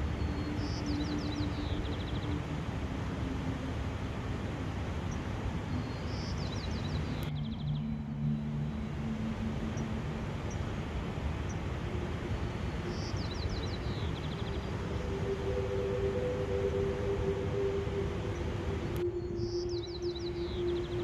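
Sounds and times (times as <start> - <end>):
faint motor hum: 0.0 - 21.0
bird trill: 12.6 - 21.0.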